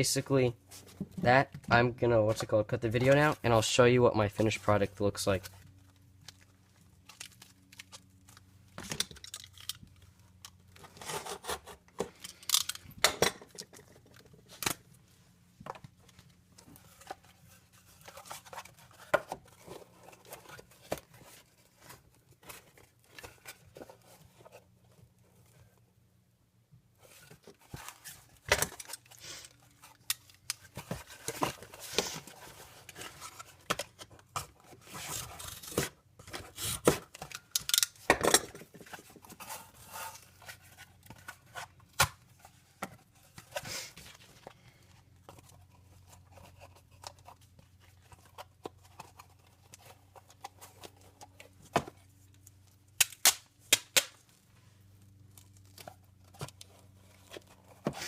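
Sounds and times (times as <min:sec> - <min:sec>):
tape and cardboard rustling: 0:00.6 - 0:25.9, 0:26.9 - 0:58.0
duct tape tearing: 0:53.0 - 0:54.2.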